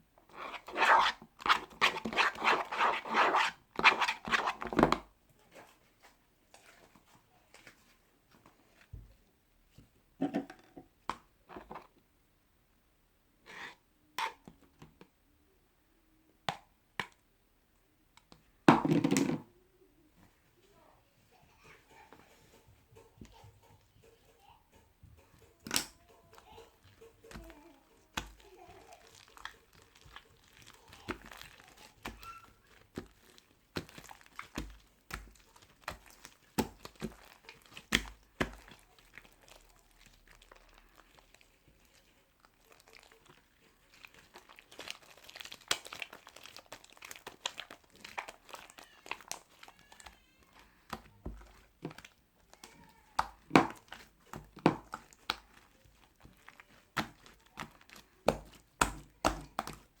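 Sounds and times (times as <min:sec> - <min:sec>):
crinkling: 0:00.2 - 0:10.4, 0:21.3 - 1:00.0
sharp clicks and taps: 0:23.0 - 0:28.4.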